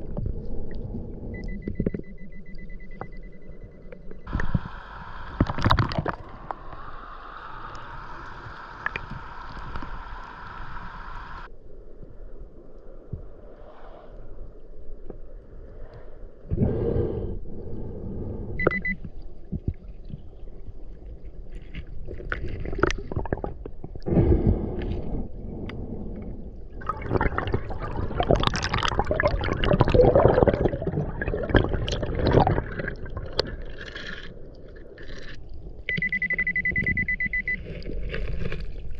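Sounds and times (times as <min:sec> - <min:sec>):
underwater gurgling and bubbling: 0:00.0 - 0:11.5, 0:16.6 - 0:38.9
metal detector beep: 0:01.4 - 0:04.4, 0:18.6 - 0:19.0, 0:35.9 - 0:37.7.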